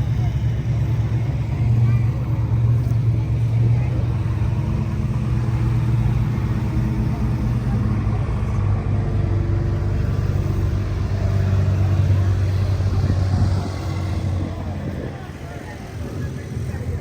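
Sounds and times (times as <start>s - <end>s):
car engine rumbling: 0.0s - 17.0s.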